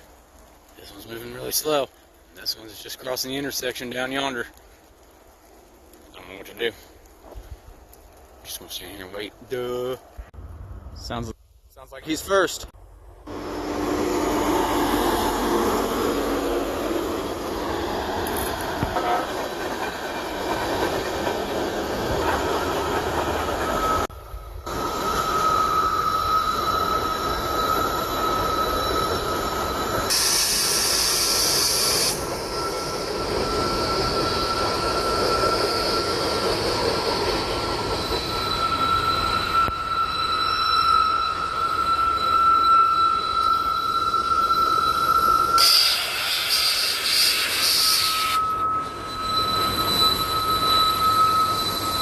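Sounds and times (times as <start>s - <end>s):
rumble of train cars: 0.0s - 52.0s
train wheels squealing on rail: 13.3s - 52.0s
brief high hiss: 30.1s - 32.3s, 45.6s - 48.4s.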